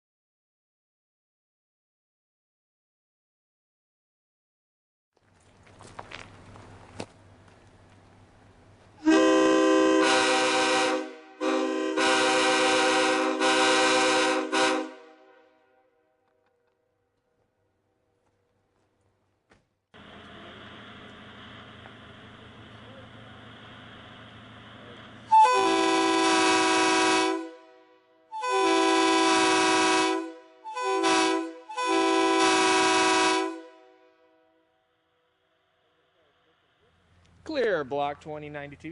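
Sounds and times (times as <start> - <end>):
locomotive air horn chord: 9.0 - 16.2, 25.3 - 35.0.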